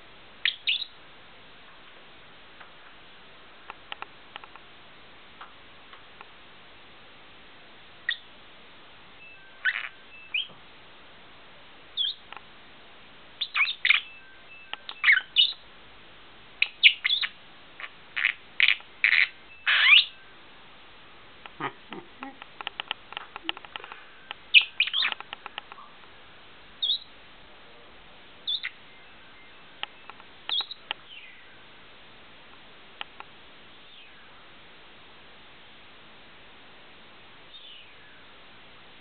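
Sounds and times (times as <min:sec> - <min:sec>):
lovebird chirping: 0:00.4 - 0:01.0, 0:08.0 - 0:08.3, 0:09.2 - 0:10.6, 0:11.9 - 0:12.3, 0:13.4 - 0:15.6, 0:16.6 - 0:20.4, 0:21.5 - 0:26.0, 0:26.8 - 0:27.1, 0:28.4 - 0:31.7, 0:37.5 - 0:38.2.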